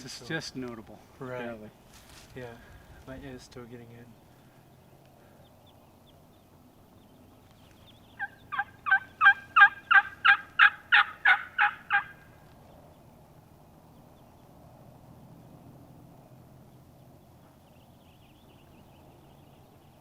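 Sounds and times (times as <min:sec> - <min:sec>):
turkey hen yelping: 0:08.2 - 0:12.3.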